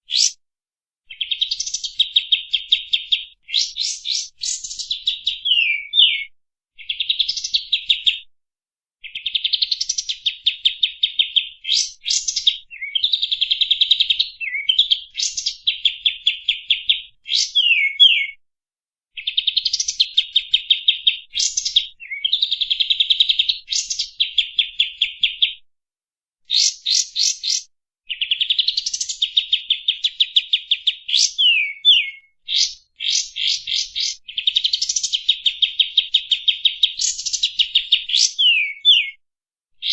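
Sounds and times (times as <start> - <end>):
songbird singing rattling trills: 1.1 - 6.2.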